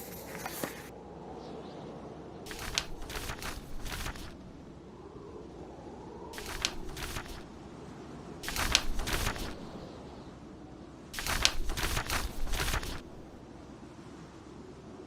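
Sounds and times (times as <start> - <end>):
paper pages turning: 0.0 - 0.9, 2.5 - 4.4, 6.4 - 7.5, 8.4 - 9.7, 11.2 - 13.4
wind: 0.0 - 15.0.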